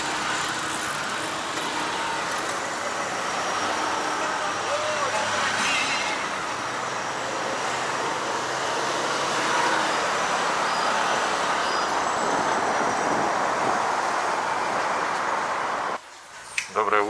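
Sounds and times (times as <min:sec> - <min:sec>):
vehicle road and wind noise: 0:00.0 - 0:16.8.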